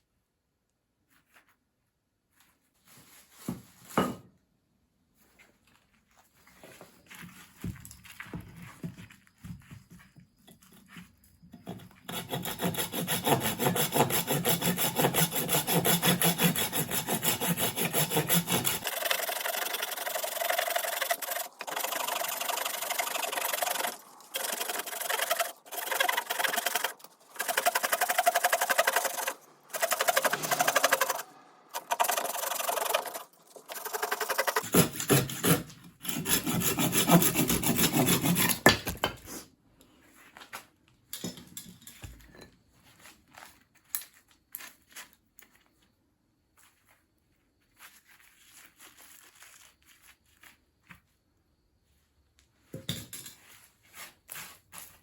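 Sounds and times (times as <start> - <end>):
blade shaving wood: 11.5 - 39.3.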